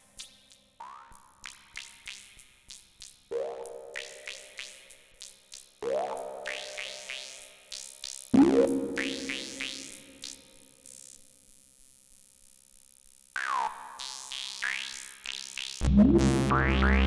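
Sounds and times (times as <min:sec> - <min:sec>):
synthesizer chords: 0:15.8 - 0:17.0
synthesizer plucked notes: 0:15.8 - 0:17.0.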